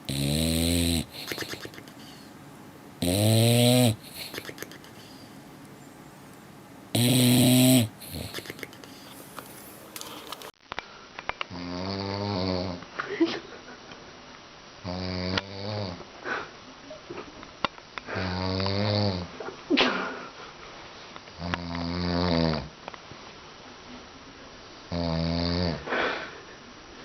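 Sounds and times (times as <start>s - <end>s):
heavy snoring: 0.0s - 2.2s, 3.0s - 4.5s, 6.9s - 8.6s, 11.5s - 12.8s, 14.9s - 16.0s, 18.2s - 19.3s, 21.5s - 22.7s, 24.9s - 25.9s
short snuffles: 1.0s - 1.9s.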